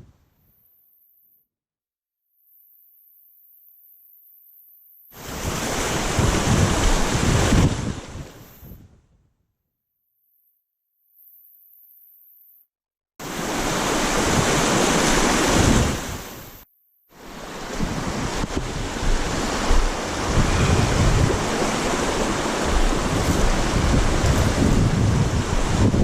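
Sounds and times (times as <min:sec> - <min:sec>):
wind buffeting microphone: 0:05.2 - 0:09.2, 0:17.3 - 0:26.0
steady rushing noise: 0:17.2 - 0:26.0.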